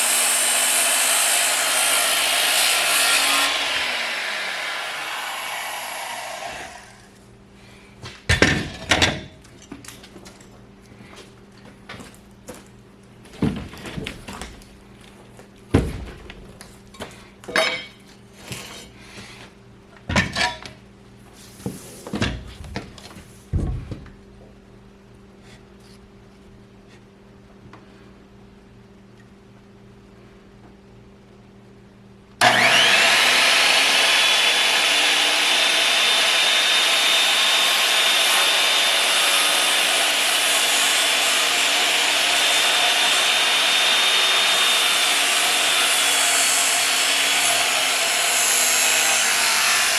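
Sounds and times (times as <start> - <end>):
power saw spinning down: 0.0 - 7.1, 32.4 - 49.9.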